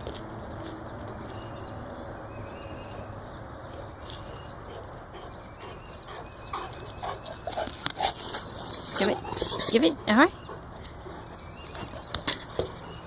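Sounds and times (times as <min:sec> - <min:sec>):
outdoor background noise: 0:00.0 - 0:13.0
dog panting: 0:04.6 - 0:12.2.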